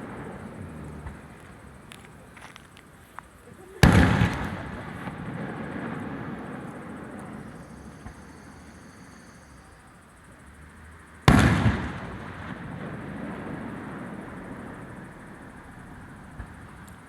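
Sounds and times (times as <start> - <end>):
faint firework pops: 0.0 - 8.5, 11.3 - 13.4, 16.3 - 17.0
firework shell booming: 3.8 - 8.4, 11.3 - 14.4.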